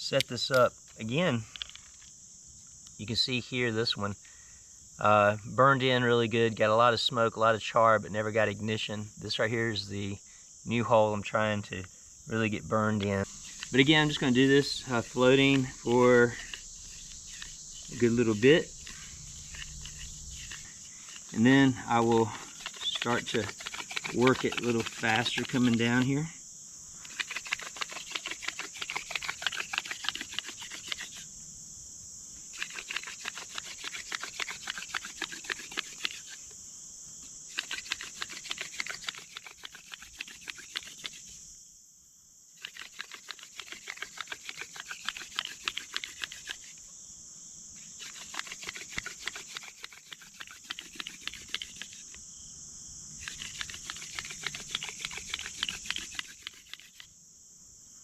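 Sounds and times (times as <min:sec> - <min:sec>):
spindle scratchy rubbing on wood: 0:13.2 - 0:26.2, 0:27.1 - 0:31.3, 0:32.5 - 0:36.5, 0:37.5 - 0:41.3, 0:42.6 - 0:46.8, 0:47.8 - 0:52.2, 0:53.2 - 0:57.1.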